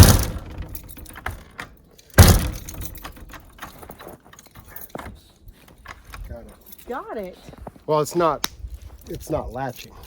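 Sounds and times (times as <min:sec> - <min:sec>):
door slamming: 0:00.0 - 0:03.8
latch clicking and rattling: 0:00.0 - 0:06.6.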